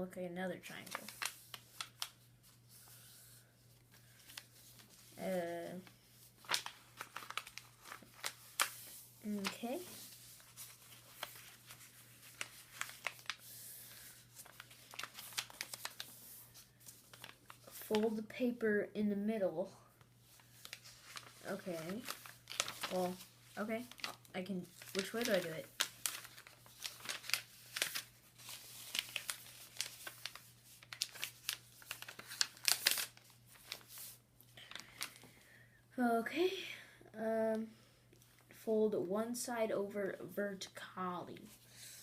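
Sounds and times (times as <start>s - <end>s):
faint steady hum: 0.0s - 42.0s
paper crinkling: 0.7s - 18.2s, 20.2s - 35.4s.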